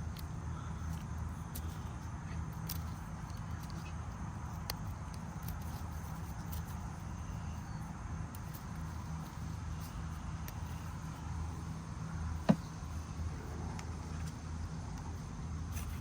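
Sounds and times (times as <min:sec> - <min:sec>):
steady low hum: 0:00.0 - 0:16.0
small parts clicking: 0:00.1 - 0:03.9, 0:04.6 - 0:06.8.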